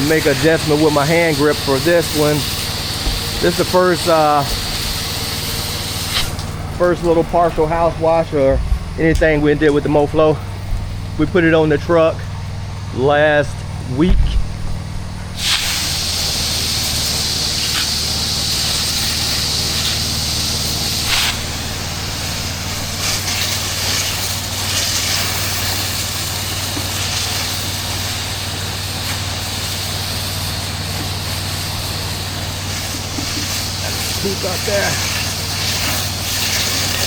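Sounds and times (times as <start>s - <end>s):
spray hissing from nozzle: 0.0s - 6.6s, 15.4s - 37.0s
pump engine running: 0.0s - 37.0s.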